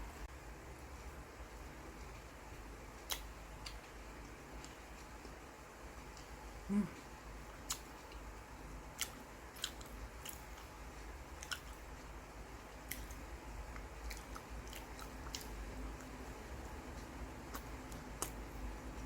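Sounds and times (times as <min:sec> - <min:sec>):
low steady hum: 0:00.0 - 0:19.0
mouth clicks and smacks: 0:03.0 - 0:03.9, 0:06.2 - 0:08.3, 0:09.0 - 0:10.7, 0:12.8 - 0:16.2, 0:17.4 - 0:18.4
person chewing: 0:03.0 - 0:03.9, 0:06.2 - 0:08.3, 0:09.0 - 0:10.7, 0:11.4 - 0:11.9, 0:12.8 - 0:16.2, 0:17.4 - 0:18.4.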